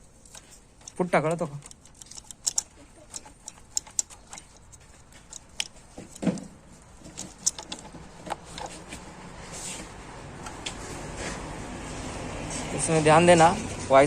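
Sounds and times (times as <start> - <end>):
metal parts and tools clicking: 0.0 - 9.0.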